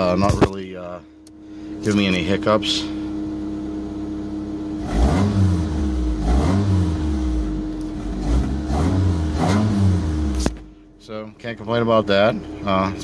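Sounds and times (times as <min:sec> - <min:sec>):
car engine revving: 0:04.1 - 0:10.9.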